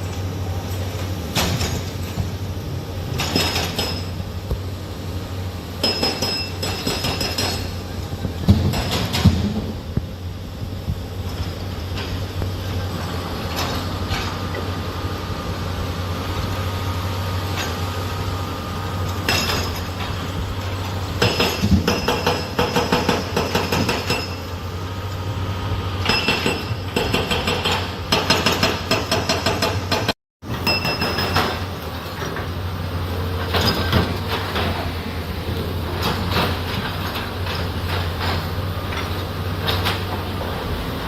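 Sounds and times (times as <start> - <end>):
diesel engine running: 0.0 - 23.5, 24.5 - 28.8, 31.4 - 41.0
metallic clanking of steel parts: 19.1 - 24.5, 26.0 - 32.6, 33.4 - 40.8.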